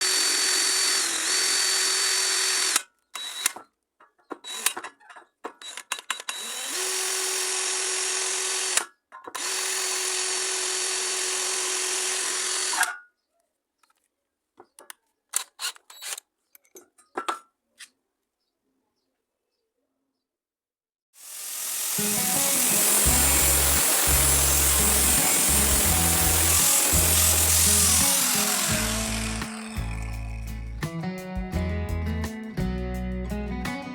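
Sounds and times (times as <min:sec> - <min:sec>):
electric power tool whining: 0:00.0 - 0:03.7, 0:04.4 - 0:04.9, 0:05.6 - 0:12.9, 0:21.2 - 0:30.8.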